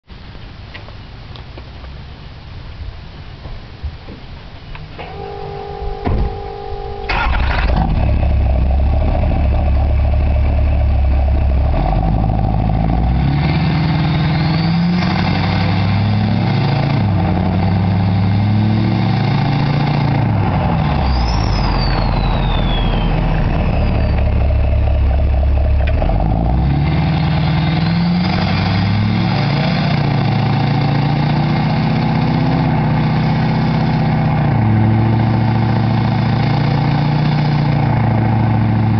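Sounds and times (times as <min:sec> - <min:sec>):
turbo whistle: 0:05.0 - 0:07.8, 0:13.9 - 0:15.1, 0:20.7 - 0:25.0, 0:27.3 - 0:28.6
two-note tone: 0:05.0 - 0:10.0
diesel engine starting and revving: 0:05.0 - 0:38.9.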